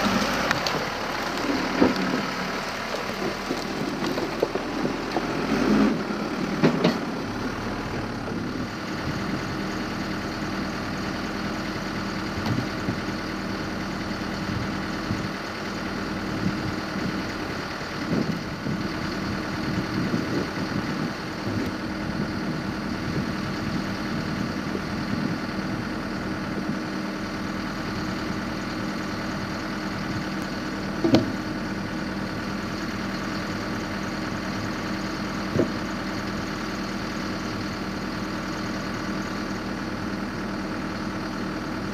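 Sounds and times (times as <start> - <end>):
backhoe engine running: 0.0 - 41.9
sharp knocks from log splitting: 31.0 - 31.4.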